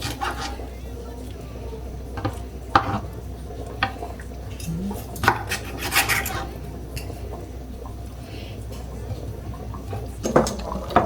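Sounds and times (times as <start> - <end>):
steady low hum: 4.6 - 5.4.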